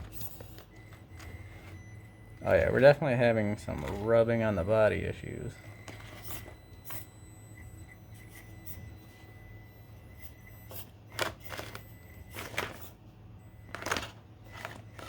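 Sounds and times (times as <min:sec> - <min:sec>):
small electric motor whine: 0:05.6 - 0:15.0.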